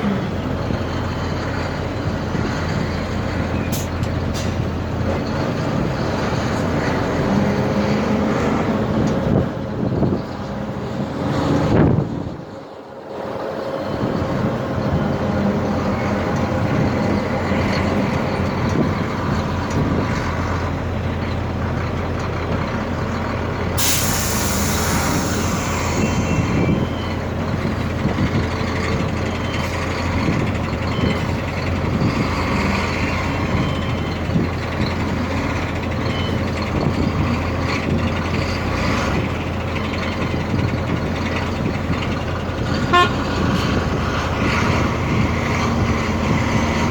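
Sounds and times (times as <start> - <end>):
truck engine running: 0.0 - 46.9
air brakes hissing: 3.7 - 4.6, 23.8 - 27.3.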